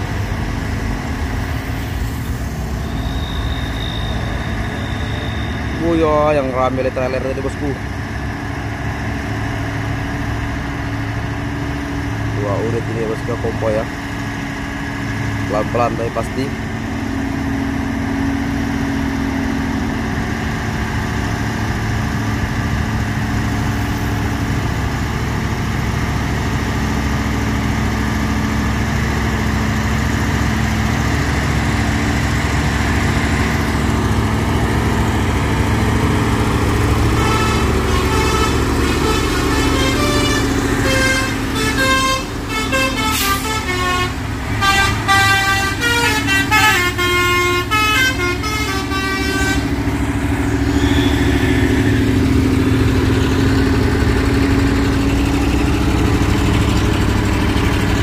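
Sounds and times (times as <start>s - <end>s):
truck diesel engines running: 0.0s - 58.0s
multi-tone vehicle horn: 2.9s - 5.4s, 37.1s - 49.8s, 50.7s - 51.7s.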